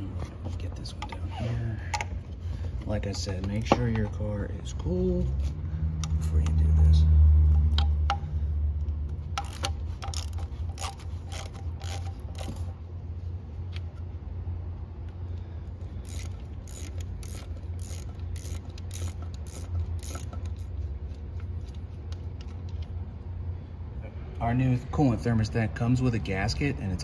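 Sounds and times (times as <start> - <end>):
steady low hum: 0.0 - 27.0
socket ratchet clicking: 9.2 - 12.7, 16.0 - 20.8.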